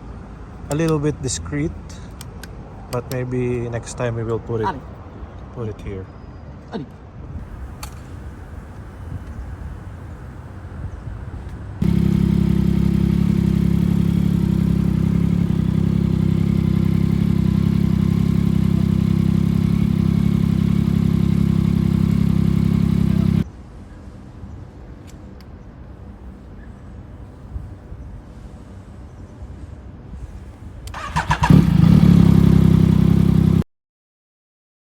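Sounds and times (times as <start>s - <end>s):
motorcycle engine idling: 11.8s - 23.4s, 31.0s - 33.6s
faint background noise: 23.4s - 31.5s.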